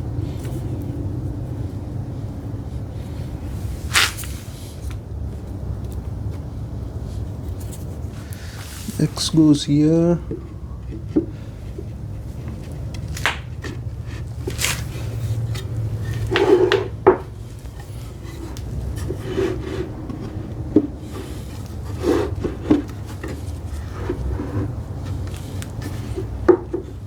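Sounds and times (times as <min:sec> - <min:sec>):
wood scraping rubs: 0:07.4 - 0:27.0
wood-on-wood knocks: 0:12.6 - 0:14.6, 0:15.6 - 0:17.4, 0:25.8 - 0:27.0.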